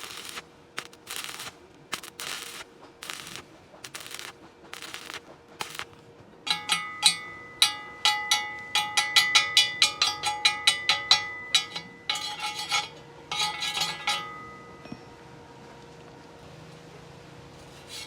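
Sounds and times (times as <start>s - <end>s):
hammer striking metal tube: 6.5s - 15.0s.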